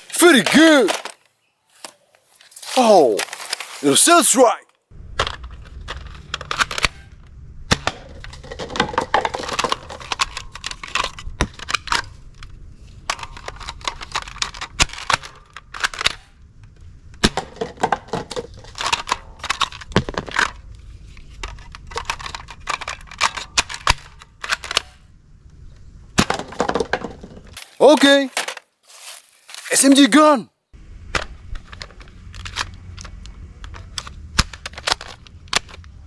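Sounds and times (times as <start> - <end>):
plastic toy guns clicking and clattering: 0.0 - 2.0, 8.7 - 12.1, 13.1 - 16.3, 17.8 - 20.6, 21.4 - 25.0, 27.6 - 30.0, 31.7 - 36.0.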